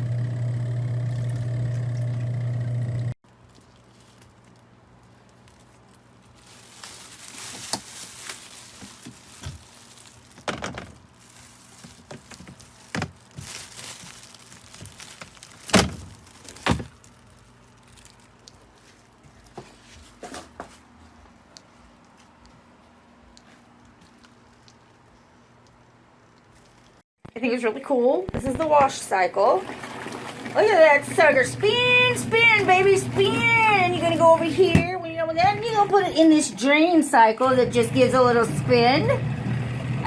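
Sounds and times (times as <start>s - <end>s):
rustling: 3.3s - 27.0s.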